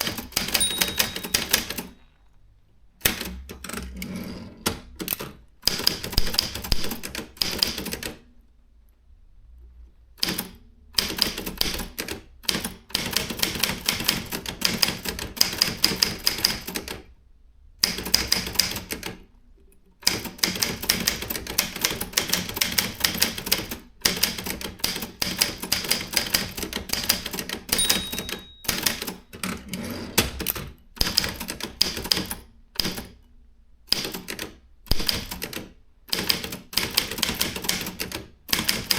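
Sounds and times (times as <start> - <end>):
typewriter keystrokes: 0.0 - 1.9, 4.7 - 8.2, 20.1 - 29.7, 30.3 - 33.1, 33.9 - 38.9.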